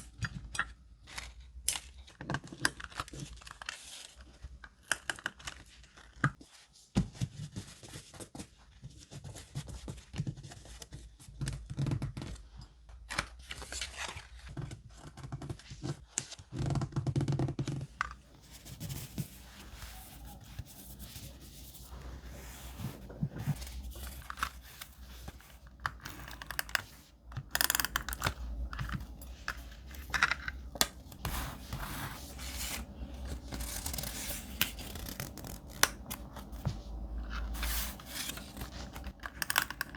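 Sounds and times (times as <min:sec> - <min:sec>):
paper being torn and cut: 0:29.3 - 0:39.9.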